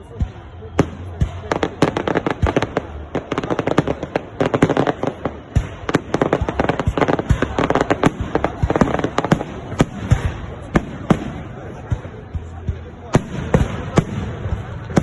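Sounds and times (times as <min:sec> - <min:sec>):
deep fireworks booms: 0:00.1 - 0:15.0
fireworks cracks and pops: 0:01.0 - 0:12.1.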